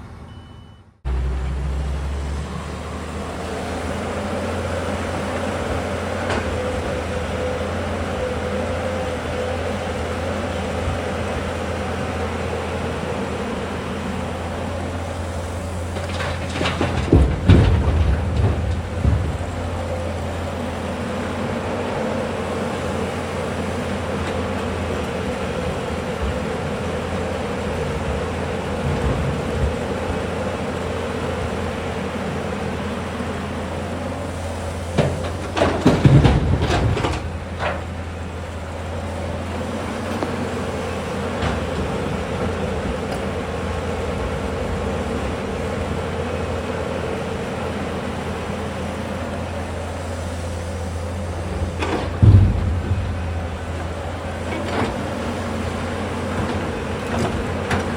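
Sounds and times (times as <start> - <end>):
excavator diesel engine running: 0.0 - 57.9
loud knocks and clatter: 15.9 - 20.3, 34.8 - 38.4, 39.5 - 43.4, 50.8 - 57.9.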